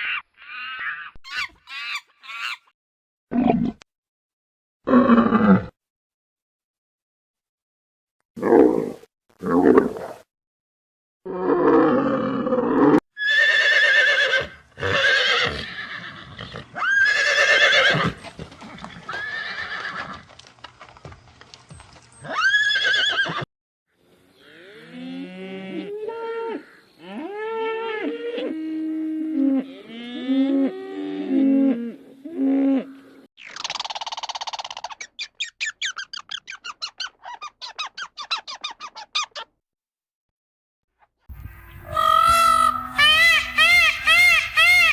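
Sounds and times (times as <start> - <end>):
animal squeaky calls: 0.0 - 2.7, 33.4 - 39.5, 41.4 - 44.9
horse whinnying: 13.2 - 20.2, 22.2 - 23.5.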